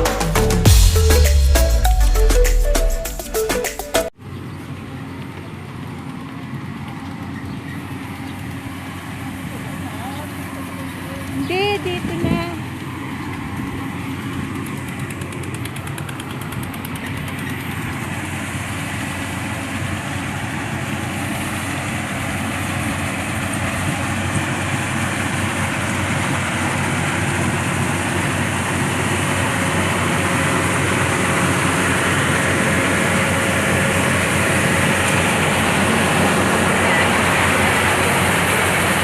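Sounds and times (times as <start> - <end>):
combine harvester running: 0.0 - 39.0.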